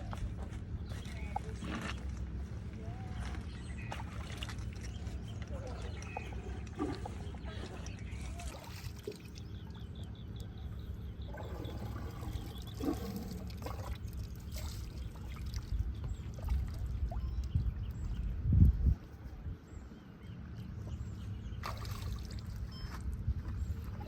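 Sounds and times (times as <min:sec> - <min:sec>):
water pouring and trickling: 0:03.9 - 0:10.1, 0:11.2 - 0:18.1, 0:21.6 - 0:24.0.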